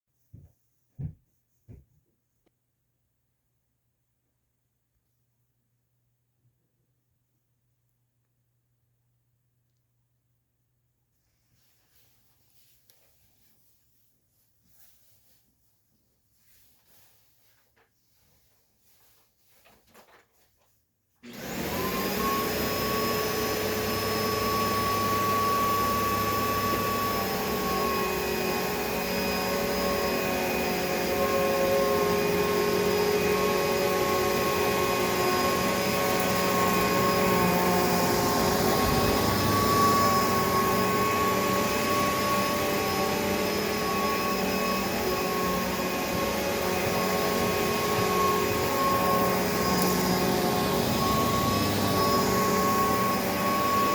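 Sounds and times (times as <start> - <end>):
vacuum cleaner running: 21.2 - 53.9.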